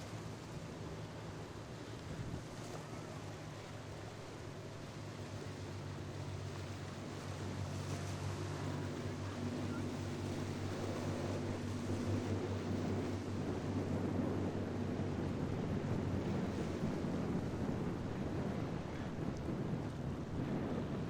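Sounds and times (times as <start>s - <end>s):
boat engine droning: 0.0s - 21.0s
wind noise on microphone: 2.0s - 3.2s, 7.2s - 21.0s.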